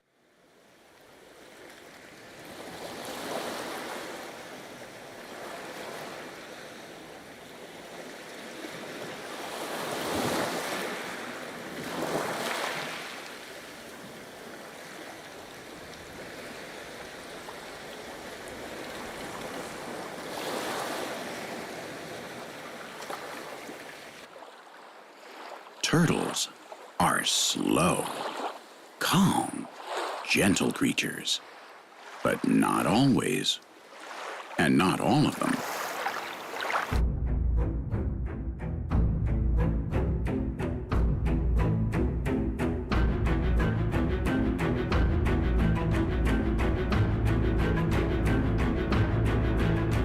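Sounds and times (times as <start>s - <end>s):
sea waves washing onto shore: 1.0s - 37.0s.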